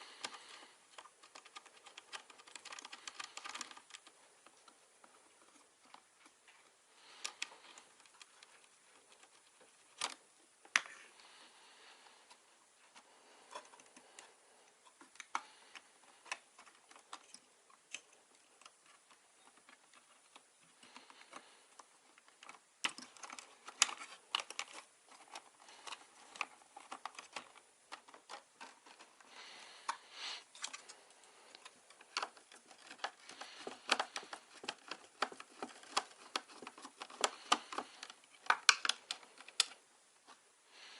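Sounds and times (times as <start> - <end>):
hands clicking small hard parts: 0.0 - 11.0, 12.2 - 39.8
soft breathing: 0.0 - 40.9.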